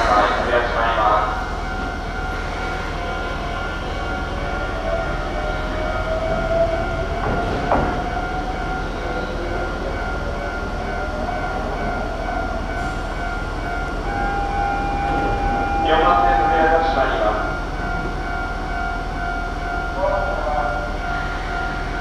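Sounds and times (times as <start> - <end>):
electric train motor whine: 13.8 - 16.8.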